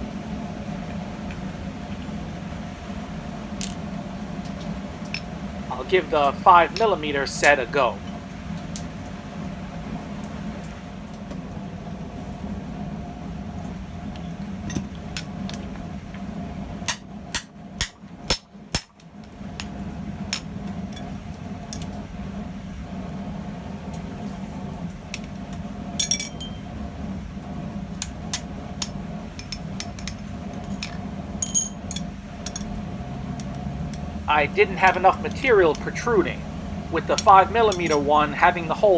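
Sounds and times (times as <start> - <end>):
low hum: 11.5 - 38.9
hammer striking metal: 16.9 - 19.2, 37.0 - 38.5.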